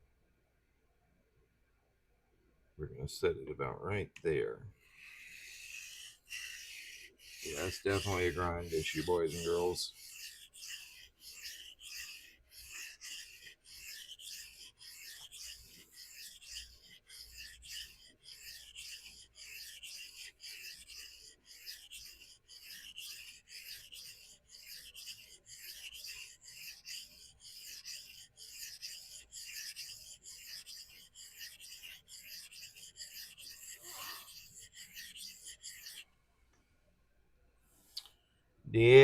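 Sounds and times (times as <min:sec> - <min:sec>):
knife scraping on sharpening stone: 0:05.6 - 0:36.0.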